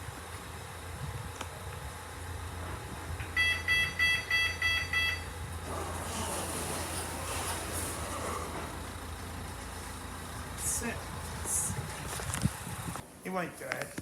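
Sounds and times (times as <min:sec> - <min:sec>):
lift electronic beeps: 0:03.3 - 0:09.5.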